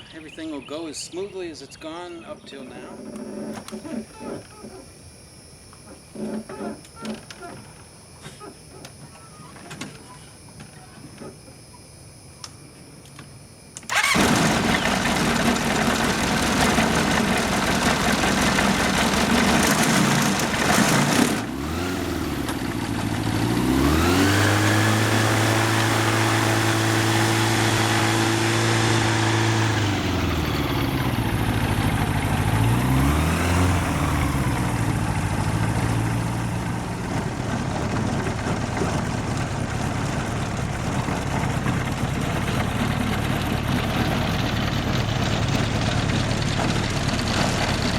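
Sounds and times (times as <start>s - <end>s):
aircraft engine running and revving: 13.8s - 47.9s.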